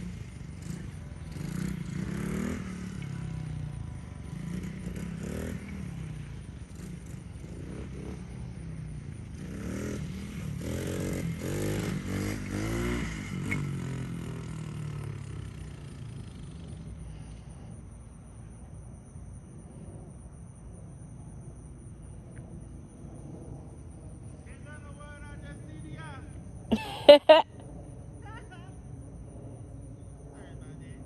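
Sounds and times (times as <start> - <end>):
dirt bike engine revving: 0.0 - 16.8, 26.7 - 27.4.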